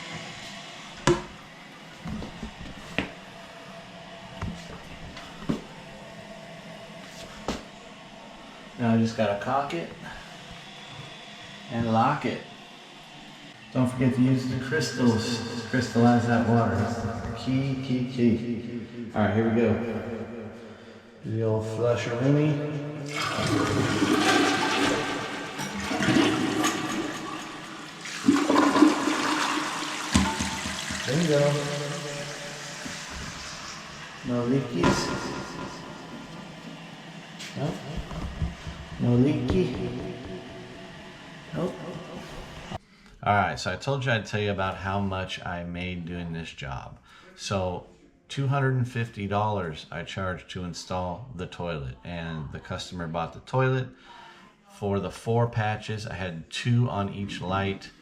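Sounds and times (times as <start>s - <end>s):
toilet tank filling with water: 13.5s - 18.2s, 23.0s - 42.8s.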